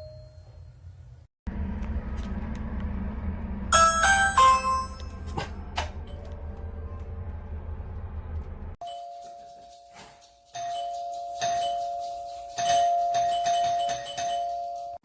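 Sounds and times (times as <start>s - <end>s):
two-tone door chime ringing: 0.0s - 0.7s, 3.8s - 5.3s, 8.8s - 15.0s.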